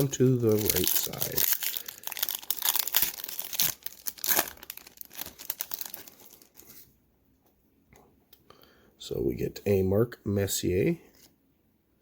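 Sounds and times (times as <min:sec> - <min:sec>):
wrapper tearing and crinkling: 0:00.0 - 0:06.7.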